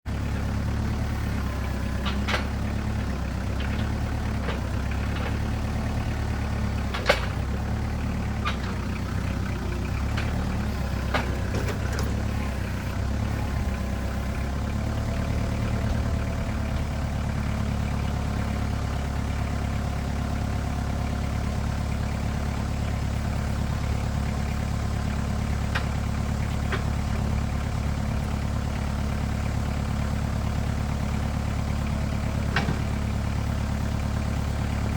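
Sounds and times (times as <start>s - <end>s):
tractor engine idling: 0.1s - 34.9s.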